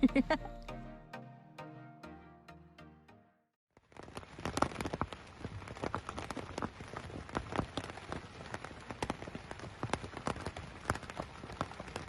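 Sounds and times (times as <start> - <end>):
rain pattering on surface: 3.8 - 12.0.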